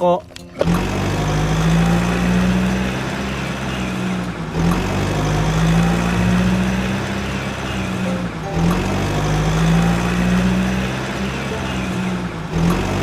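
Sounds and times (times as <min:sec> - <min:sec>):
vehicle engine idling: 0:00.4 - 0:13.0.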